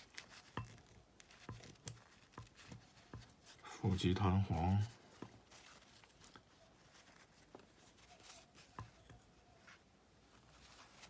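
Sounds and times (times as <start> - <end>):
faint clicks of small parts: 0.0 - 3.7.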